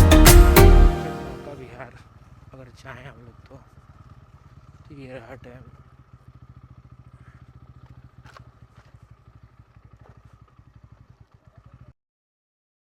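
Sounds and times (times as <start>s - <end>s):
motorcycle engine putter: 5.7s - 11.8s.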